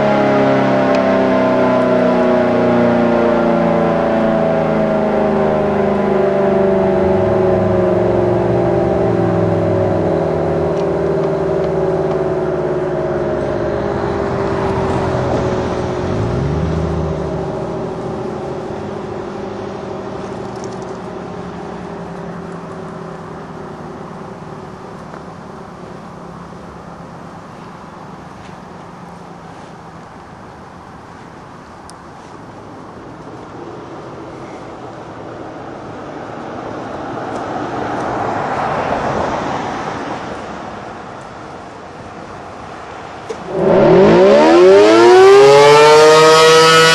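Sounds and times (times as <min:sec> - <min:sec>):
vehicle driving past: 0:00.0 - 0:25.0, 0:36.3 - 0:41.6, 0:42.7 - 0:46.9
warning siren winding down: 0:00.0 - 0:25.1, 0:43.3 - 0:46.9.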